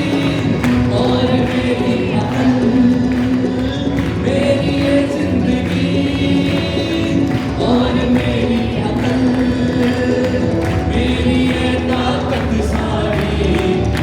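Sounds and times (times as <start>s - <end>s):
group singing gospel song: 0.0s - 14.0s
musical accompaniment: 0.0s - 14.0s.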